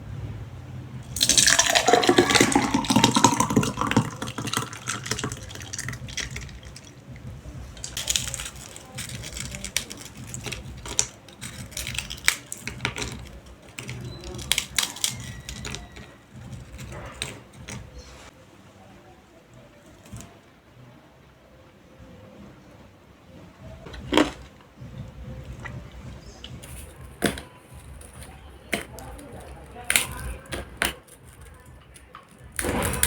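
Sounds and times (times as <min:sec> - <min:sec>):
liquid poured into a glass: 0:01.2 - 0:06.9.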